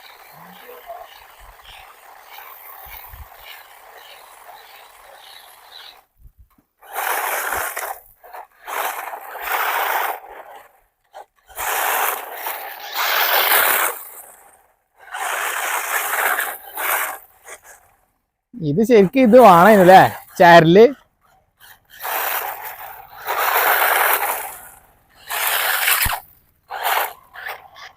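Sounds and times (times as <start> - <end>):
toy car tyres scraping ground: 0.0 - 27.9.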